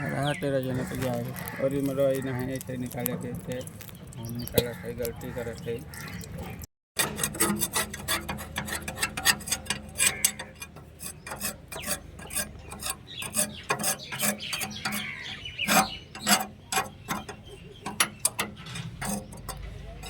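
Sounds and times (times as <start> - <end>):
hand tools clicking and scraping metal: 7.0 - 20.0
metal knocks: 7.0 - 20.0.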